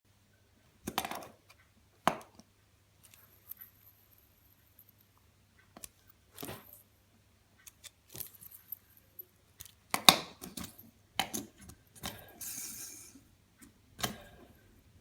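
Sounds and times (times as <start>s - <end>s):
fidget spinner clicking and rattling: 3.0s - 6.9s, 7.6s - 13.3s.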